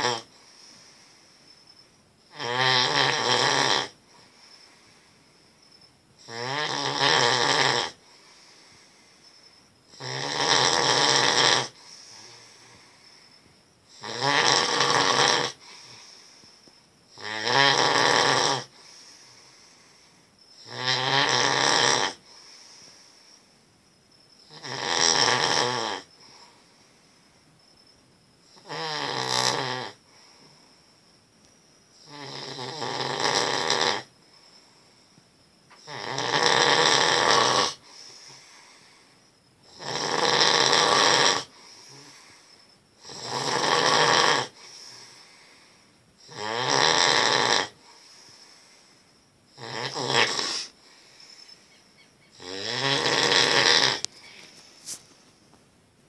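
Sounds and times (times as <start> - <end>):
man snoring heavily: 0.0 - 1.2, 2.3 - 5.0, 6.2 - 9.1, 9.9 - 13.1, 13.9 - 16.4, 17.1 - 23.2, 24.4 - 26.6, 28.5 - 30.5, 32.0 - 34.1, 35.7 - 51.6, 52.3 - 54.3.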